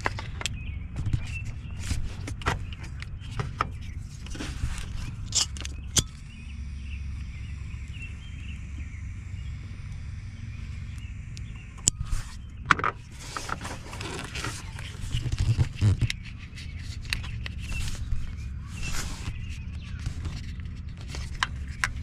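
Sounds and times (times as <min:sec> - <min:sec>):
scraping and rustling: 0:00.0 - 0:06.2, 0:12.0 - 0:22.0
low steady hum: 0:00.0 - 0:22.0.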